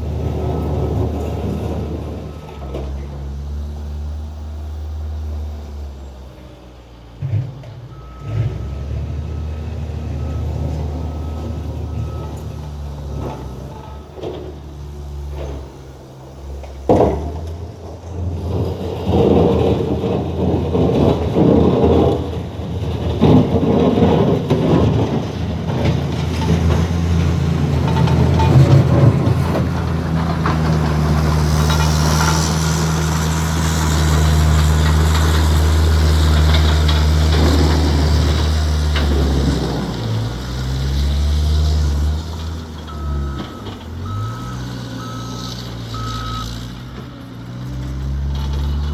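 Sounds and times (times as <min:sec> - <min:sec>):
skid steer engine running: 0:00.0 - 0:48.9
rough scraping: 0:17.4 - 0:47.0.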